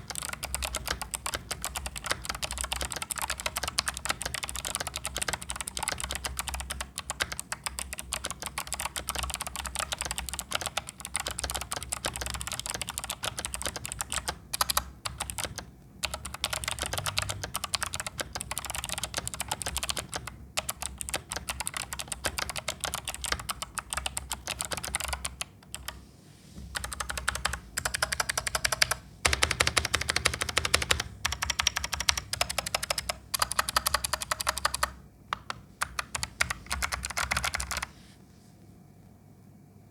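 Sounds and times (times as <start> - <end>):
mechanical keyboard typing: 0.0 - 26.0, 26.7 - 37.9.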